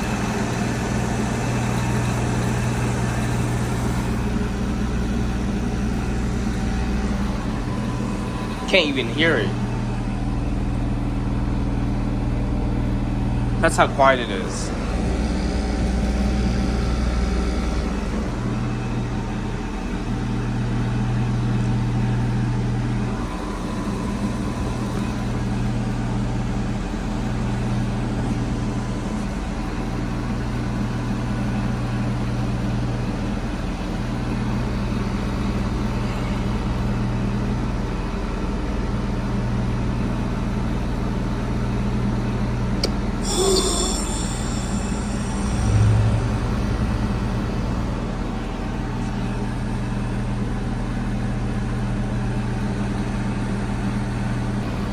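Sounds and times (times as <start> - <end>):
heat pump units humming: 0.0 - 54.9
brief high-pitched sound: 43.2 - 48.1.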